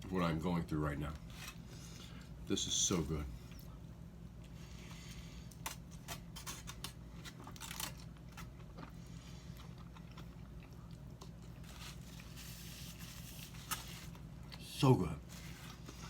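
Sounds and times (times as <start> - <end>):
steady low hum: 0.0 - 16.0
close-up chewing: 6.6 - 14.6.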